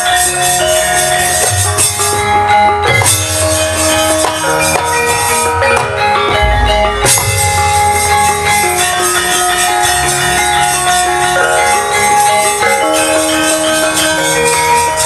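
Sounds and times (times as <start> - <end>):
metallophones playing a melody: 0.0 - 15.0
low drum-like pulses: 6.3 - 9.0.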